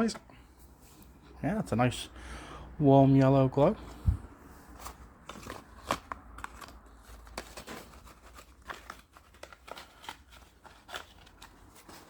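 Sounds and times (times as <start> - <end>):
cardboard packets being handled: 4.6 - 12.0.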